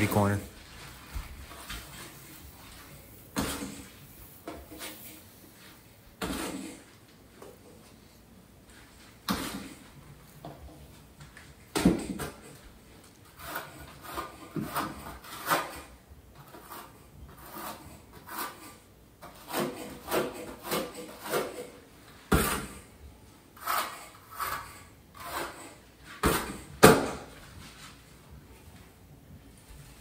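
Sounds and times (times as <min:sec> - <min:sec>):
trowel scraping mortar: 0:13.2 - 0:22.9, 0:23.5 - 0:26.7.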